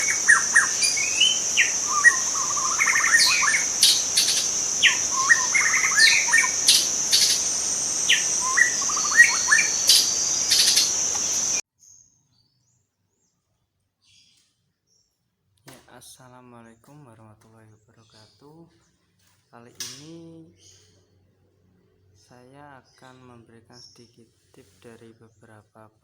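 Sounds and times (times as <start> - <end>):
bird singing whistled phrases: 0.0 - 11.6
high-pitched insect drone: 0.0 - 11.6.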